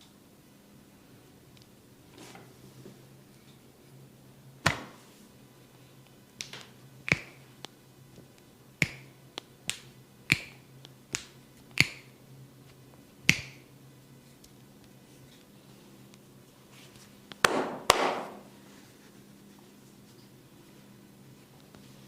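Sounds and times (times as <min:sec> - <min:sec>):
hands snapping on skin: 0:06.4 - 0:07.8, 0:08.8 - 0:12.1, 0:13.3 - 0:13.6.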